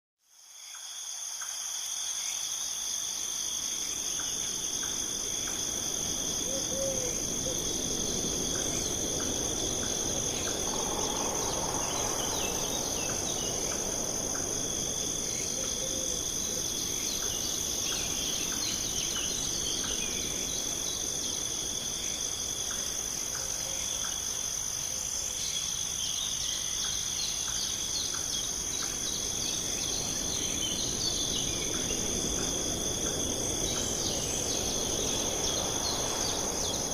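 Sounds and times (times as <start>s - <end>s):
insects trilling: 0.4s - 36.9s
low rushing noise: 4.5s - 23.1s, 28.9s - 36.9s.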